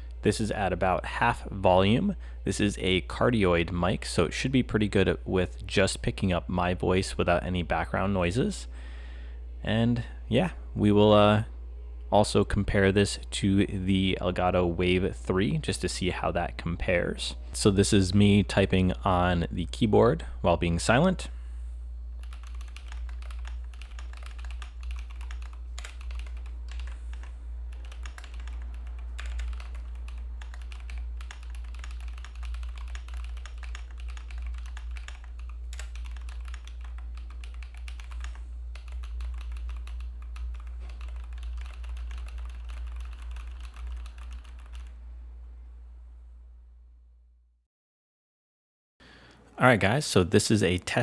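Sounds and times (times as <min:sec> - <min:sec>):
steady low hum: 0:00.0 - 0:47.5
typing on computer keyboard: 0:22.2 - 0:44.9.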